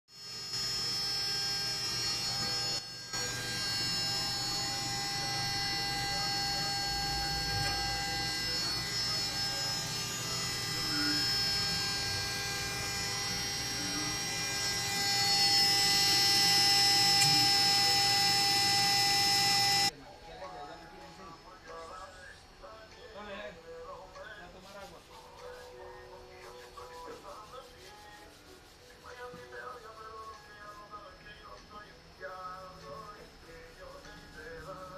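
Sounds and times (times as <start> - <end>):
cnc router whining: 0.2 - 19.9.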